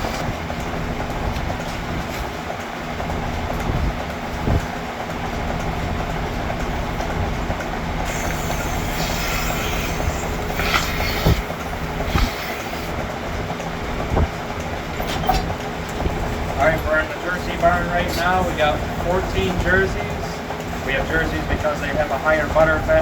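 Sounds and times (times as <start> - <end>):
milking machine humming: 0.0 - 23.0
airy hiss: 8.1 - 12.9.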